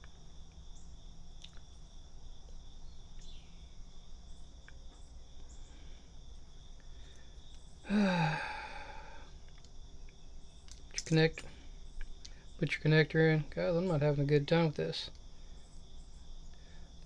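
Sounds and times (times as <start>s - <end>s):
crickets chirring: 0.0s - 17.0s
man groaning: 7.9s - 9.3s.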